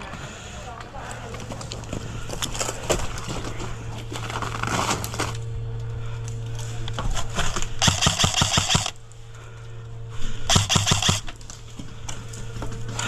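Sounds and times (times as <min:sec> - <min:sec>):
sharp cracks and clatter: 0:04.1 - 0:09.2, 0:10.5 - 0:13.0
airsoft gun full-auto burst: 0:07.8 - 0:09.0, 0:10.5 - 0:11.3.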